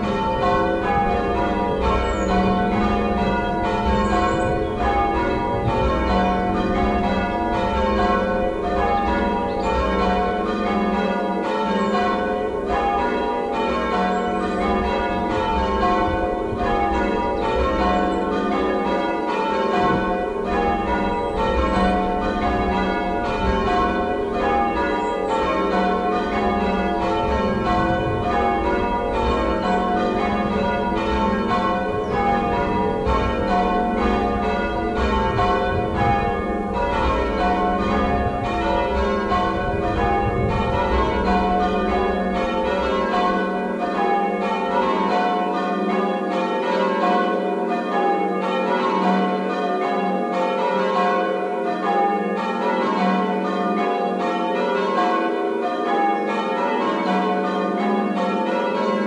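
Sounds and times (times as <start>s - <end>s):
church bells ringing in changes: 0.0s - 59.0s.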